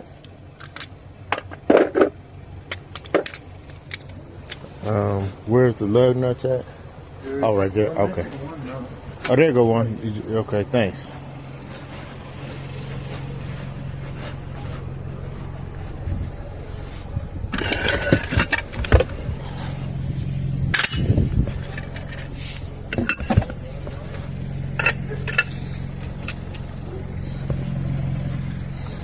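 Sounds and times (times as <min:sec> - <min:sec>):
vehicle engine idling: 0:00.0 - 0:29.0
metal tools clinking: 0:17.5 - 0:19.9, 0:20.5 - 0:26.9.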